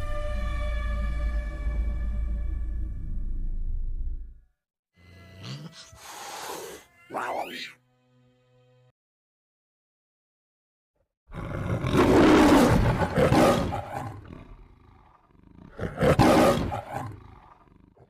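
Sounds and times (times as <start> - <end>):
lion roaring: 5.4 - 7.8, 11.3 - 18.0.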